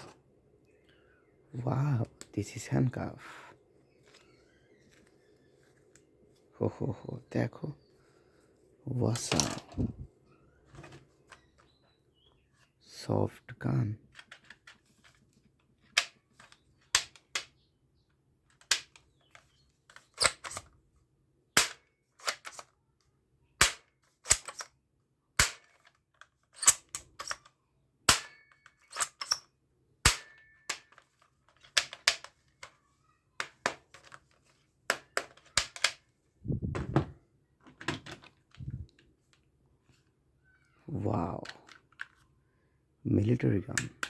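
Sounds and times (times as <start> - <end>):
dull low thumps: 36.5 - 37.2.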